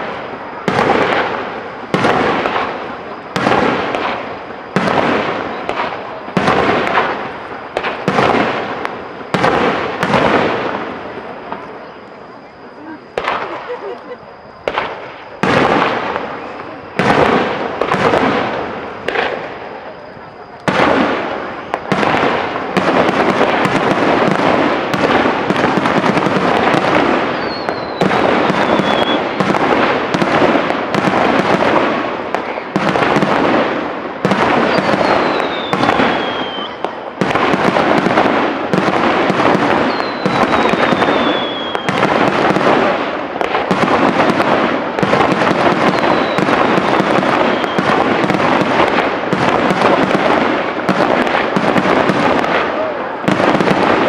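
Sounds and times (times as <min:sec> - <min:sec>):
firework shells bursting: 0:20.5 - 0:54.0
falling whistle: 0:27.3 - 0:29.2, 0:34.7 - 0:36.9, 0:39.8 - 0:42.0, 0:45.9 - 0:46.5, 0:47.4 - 0:47.9.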